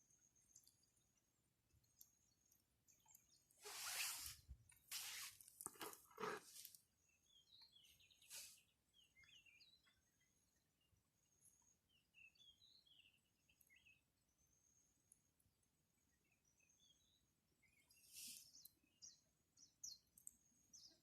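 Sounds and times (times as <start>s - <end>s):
rustling: 3.6s - 6.8s.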